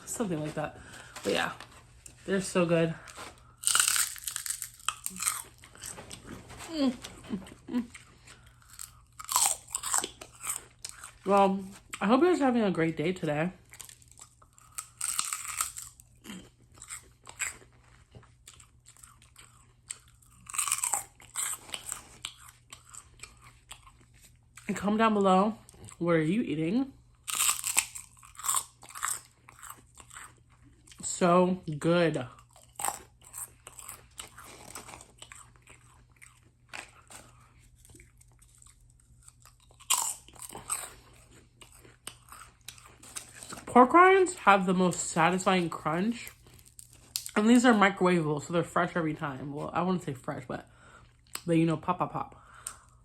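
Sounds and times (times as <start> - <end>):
person crunching crisp food: 3.0 - 12.0, 13.6 - 24.7, 27.0 - 31.1, 32.2 - 47.4.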